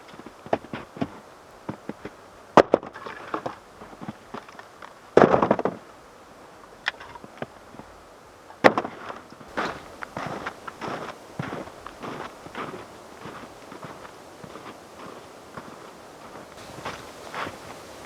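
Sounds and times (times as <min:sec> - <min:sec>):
rough crunching burst: 0:09.5 - 0:18.0.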